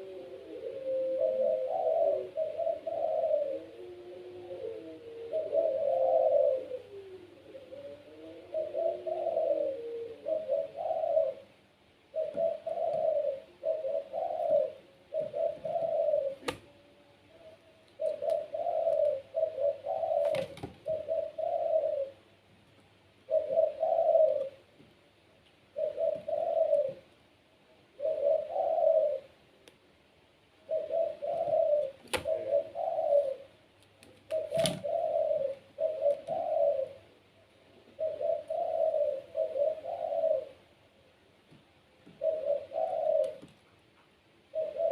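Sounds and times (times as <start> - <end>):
dove cooing: 0.0 - 22.5, 23.2 - 24.8, 25.7 - 29.6, 30.6 - 44.9.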